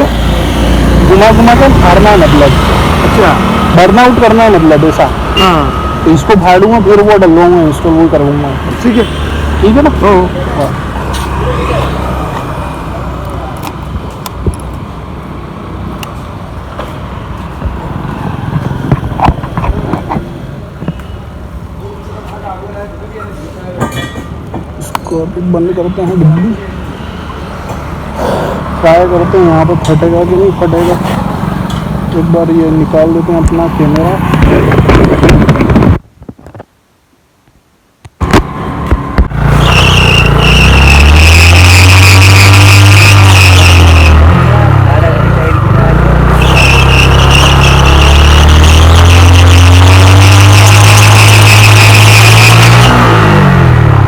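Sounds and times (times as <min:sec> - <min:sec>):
motorcycle engine revving high: 0:00.0 - 0:08.0, 0:38.3 - 0:54.0
knocks and clatter: 0:17.6 - 0:21.1, 0:34.2 - 0:36.6
vehicle low rumble: 0:38.2 - 0:54.0
tyre squealing: 0:39.4 - 0:44.6, 0:46.2 - 0:53.2.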